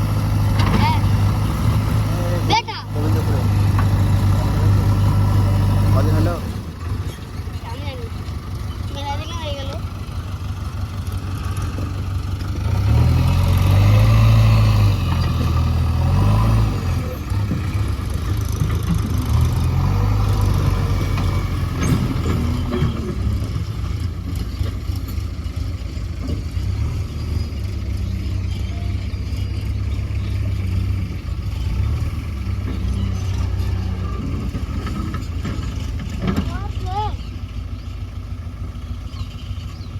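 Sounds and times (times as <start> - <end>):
backhoe diesel engine revving: 0.0 - 39.9.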